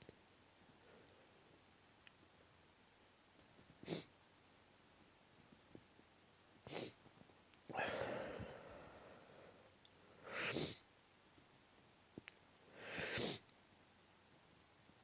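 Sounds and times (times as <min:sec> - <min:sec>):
person sneezing: 0:10.3 - 0:10.8, 0:12.9 - 0:13.4
breathy exhales through nose: 0:12.8 - 0:13.4.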